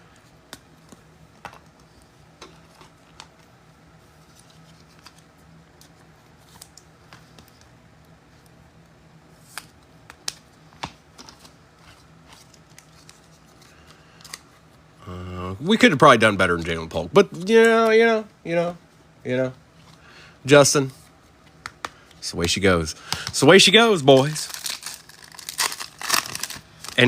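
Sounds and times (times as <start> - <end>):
faint low hum: 0.0 - 27.0
trading cards crinkling and clicking: 4.1 - 7.8, 9.4 - 14.8, 21.4 - 27.0.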